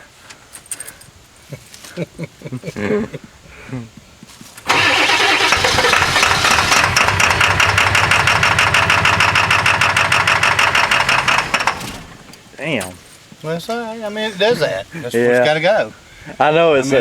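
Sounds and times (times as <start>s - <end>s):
diesel engine cranking on starter: 4.6s - 12.4s.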